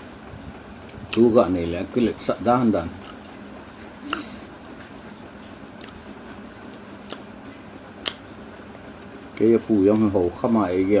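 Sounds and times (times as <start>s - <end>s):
chewing and biting mango: 2.9s - 4.5s, 5.6s - 8.4s
soft mouth clicks: 4.0s - 4.4s, 5.8s - 6.0s, 8.0s - 8.2s.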